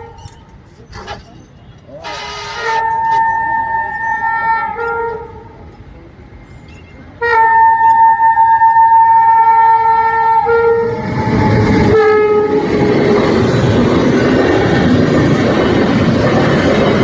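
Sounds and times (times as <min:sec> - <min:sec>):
train wheels rumbling on rails: 0:00.0 - 0:17.0
train horn long chord: 0:02.0 - 0:05.5, 0:07.2 - 0:12.7.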